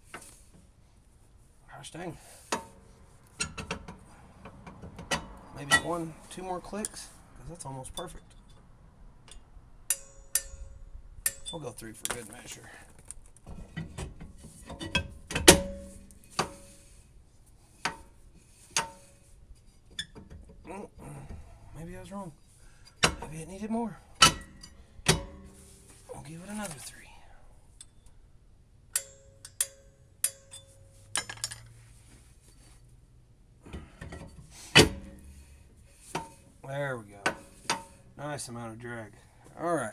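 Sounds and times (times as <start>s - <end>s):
sharp metal clicks and scrapes: 9.2s - 17.0s.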